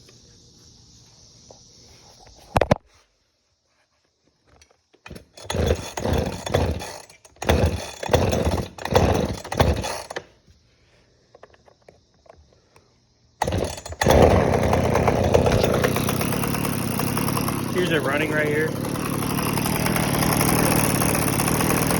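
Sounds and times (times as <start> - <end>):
recoil starter cranking: 5.0 - 10.3, 13.4 - 21.9
two-stroke engine running: 5.4 - 10.1, 13.4 - 21.9.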